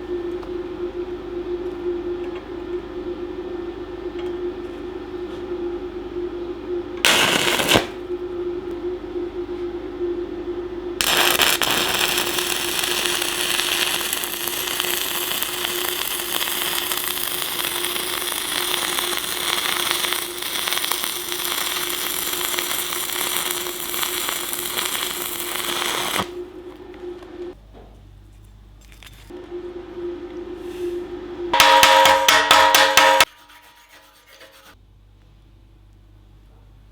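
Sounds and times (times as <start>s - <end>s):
steady hum: 0.0s - 36.4s
welding arc crackling: 7.0s - 8.0s, 11.0s - 26.4s.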